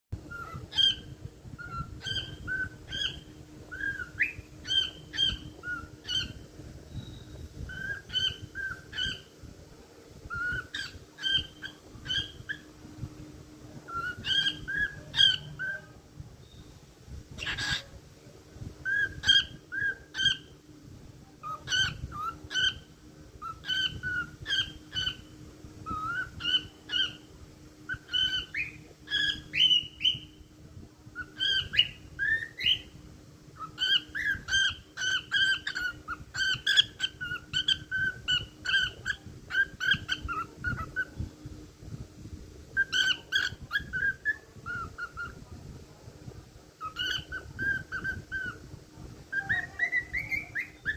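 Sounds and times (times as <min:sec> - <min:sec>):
cockatiel whistling: 0:00.3 - 0:09.3, 0:10.3 - 0:12.6, 0:13.9 - 0:15.8, 0:18.8 - 0:20.5, 0:21.4 - 0:27.2, 0:27.9 - 0:30.4, 0:31.2 - 0:33.0, 0:33.6 - 0:41.1, 0:42.8 - 0:45.4, 0:46.8 - 0:48.6, 0:49.3 - 0:50.9.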